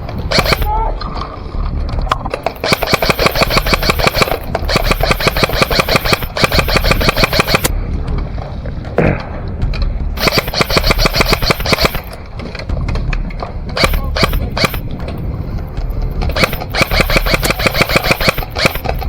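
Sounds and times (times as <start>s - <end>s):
airsoft gun firing full auto: 0.3s - 0.7s, 2.4s - 7.7s, 10.2s - 12.2s, 13.8s - 14.8s, 16.3s - 19.0s.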